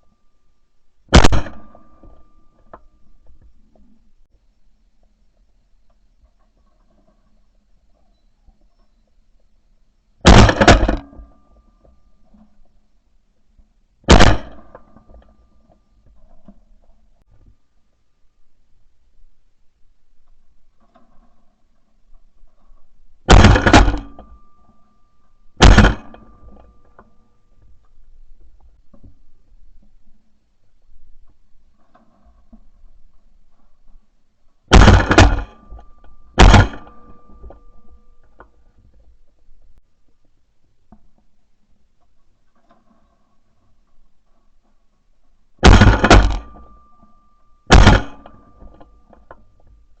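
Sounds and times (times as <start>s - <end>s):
shotgun blasts: 1.1s - 2.1s, 10.2s - 11.3s, 14.1s - 14.9s, 23.3s - 24.3s, 25.6s - 26.4s, 34.7s - 35.6s, 36.4s - 37.4s, 45.6s - 46.8s, 47.7s - 48.5s.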